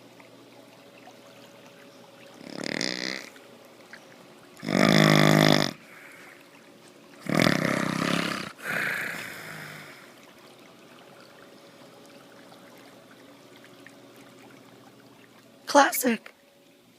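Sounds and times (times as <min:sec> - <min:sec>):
loud rattling snoring: 0:02.4 - 0:03.3, 0:04.6 - 0:05.8, 0:07.2 - 0:09.9.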